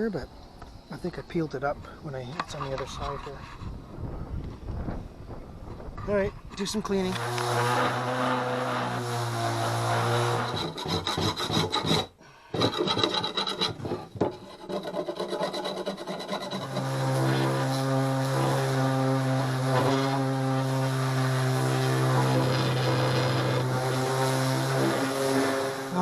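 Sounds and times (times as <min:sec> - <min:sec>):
irregular scraping strokes: 0:02.3 - 0:03.8, 0:07.0 - 0:26.0
power sander grinding: 0:07.0 - 0:26.0.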